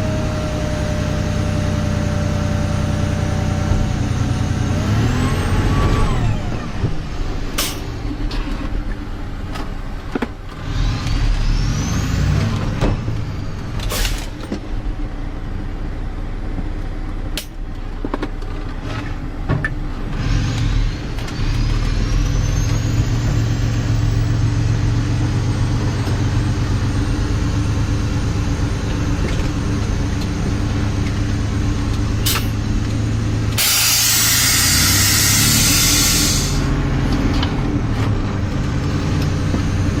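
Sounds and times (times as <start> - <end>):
diesel truck engine running: 0.0 - 40.0
air hiss: 33.6 - 36.7.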